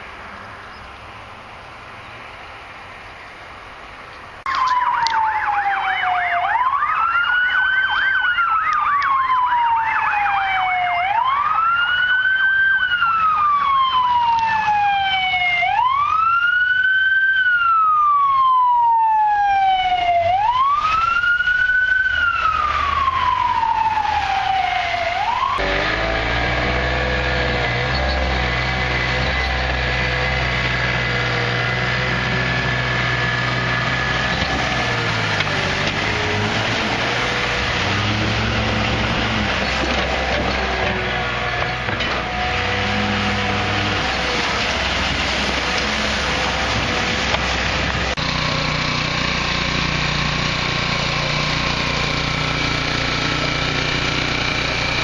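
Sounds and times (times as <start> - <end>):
siren yelp: 4.5 - 28.6
siren wailing: 4.5 - 47.3.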